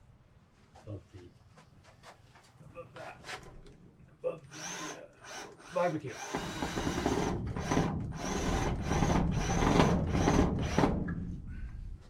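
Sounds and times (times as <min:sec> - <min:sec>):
screw gun driving screw into wood: 0:04.5 - 0:11.2.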